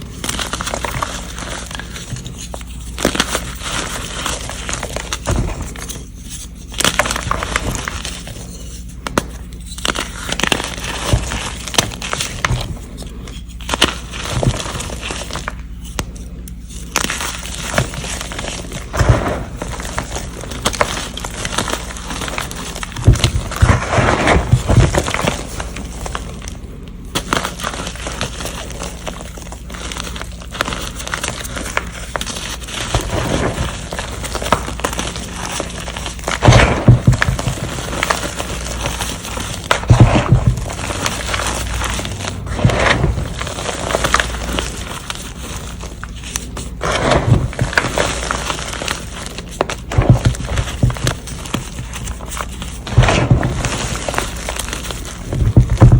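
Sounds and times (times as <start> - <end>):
chalk crunching and crackling: 0.0 - 55.9
dull thuds: 5.2 - 5.9, 18.9 - 20.0, 36.3 - 38.8, 39.6 - 44.2, 46.8 - 48.4, 49.6 - 51.6, 52.5 - 54.2, 55.2 - 55.9.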